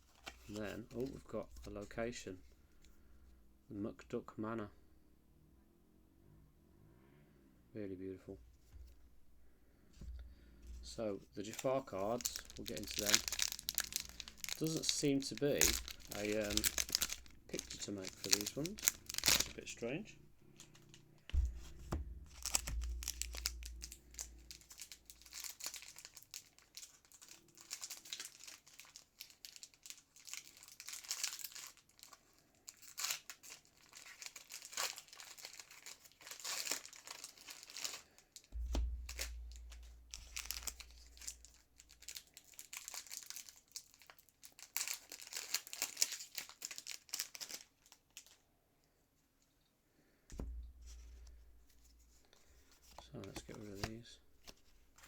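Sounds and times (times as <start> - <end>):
foil wrapper crinkling and tearing: 0.0 - 2.0, 10.8 - 48.4, 50.4 - 55.0
cards rustling: 0.0 - 2.1, 10.0 - 29.0, 38.6 - 47.6, 50.4 - 55.0
low bumps against table: 21.4 - 23.9.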